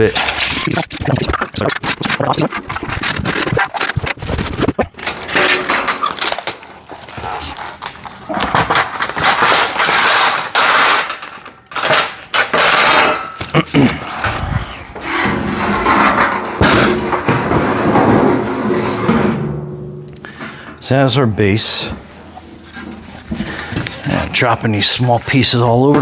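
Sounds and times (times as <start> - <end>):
cardboard rustling and scraping: 0.0 - 11.5.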